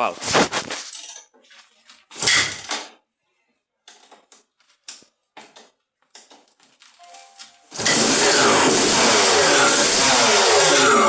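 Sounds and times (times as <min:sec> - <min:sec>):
motorcycle engine starting: 0:07.7 - 0:11.0.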